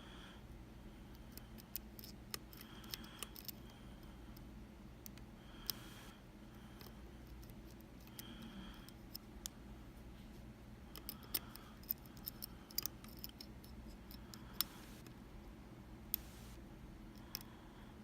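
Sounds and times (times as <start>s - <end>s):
lock picks clicking in lock: 1.3s - 3.6s.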